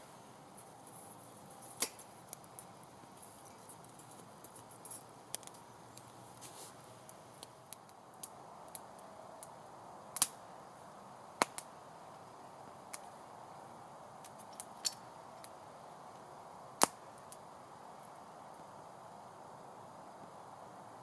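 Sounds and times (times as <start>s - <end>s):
wood fire crackling: 0.0s - 10.4s
fire hiss: 0.0s - 21.0s
fire pops and snaps: 1.6s - 2.7s, 4.0s - 9.5s, 10.1s - 10.4s, 11.4s - 11.7s, 16.8s - 17.4s.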